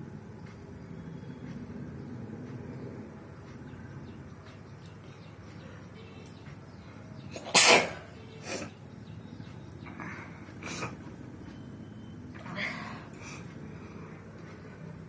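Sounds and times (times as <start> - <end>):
person sneezing: 7.4 - 8.7.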